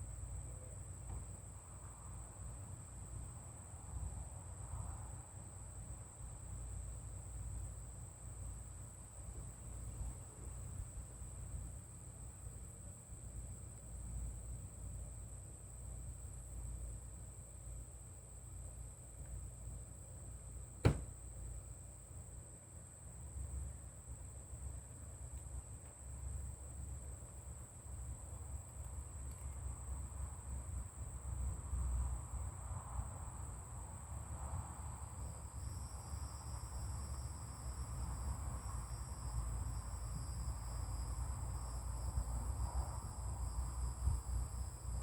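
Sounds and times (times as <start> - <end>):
lower-pitched insect drone: 26.0 - 45.0.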